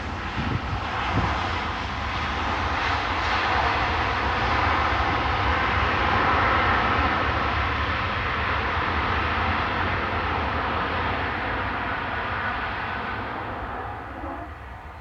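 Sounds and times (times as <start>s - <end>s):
jet engines rushing: 10.1s - 15.0s.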